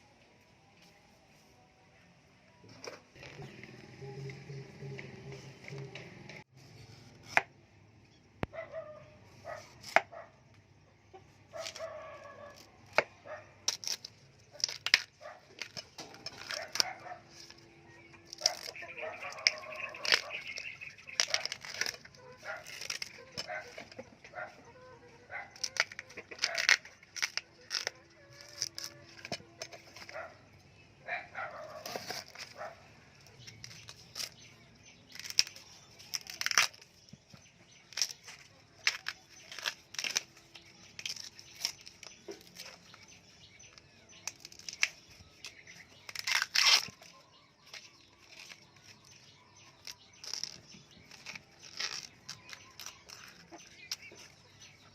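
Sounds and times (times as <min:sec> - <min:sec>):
leaves and stems rustling: 0:13.7 - 0:24.6, 0:31.7 - 0:54.9
plant stems snapping: 0:18.2 - 0:24.1, 0:25.6 - 0:30.2, 0:35.1 - 0:43.1, 0:43.8 - 0:49.0, 0:49.7 - 0:54.4.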